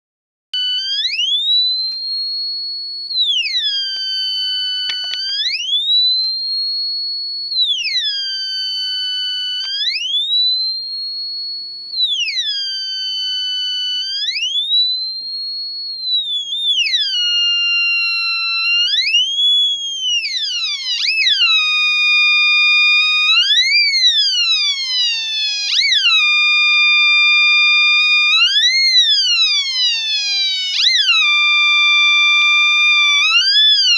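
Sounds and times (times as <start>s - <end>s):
electronic siren gliding up and down: 12.0s - 15.2s, 16.0s - 33.9s.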